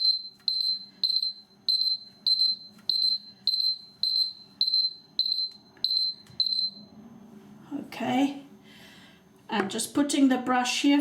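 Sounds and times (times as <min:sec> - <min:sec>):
timer beeping: 0:00.0 - 0:06.8.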